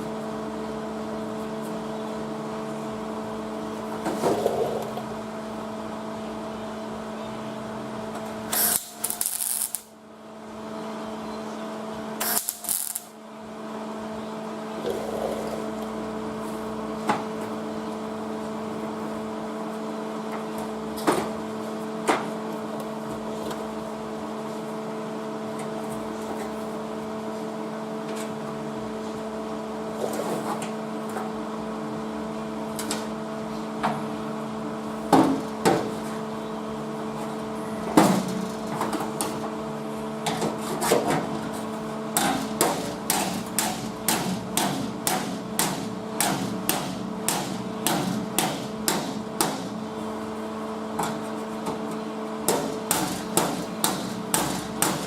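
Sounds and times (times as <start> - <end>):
electrical hum: 0.0 - 55.0
hammer on sheet steel: 42.2 - 49.7, 52.5 - 55.0.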